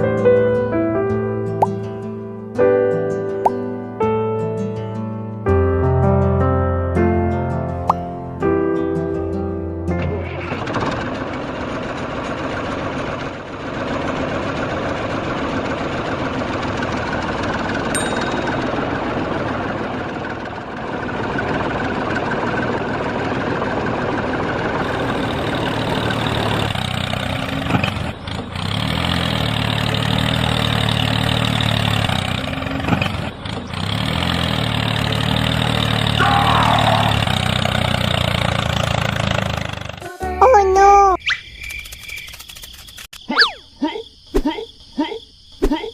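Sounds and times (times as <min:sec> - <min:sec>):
engine humming: 0:07.5 - 0:41.2.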